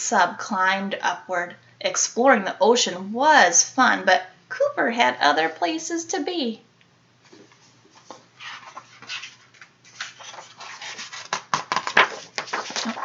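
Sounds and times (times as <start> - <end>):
rustling and small knocks: 7.2 - 10.6.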